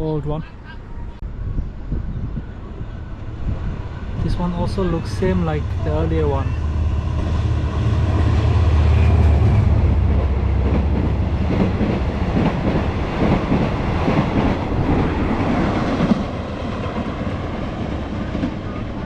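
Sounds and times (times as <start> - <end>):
deep diesel engine drone: 2.5 - 18.7
train wheels clattering on rails: 7.0 - 19.0.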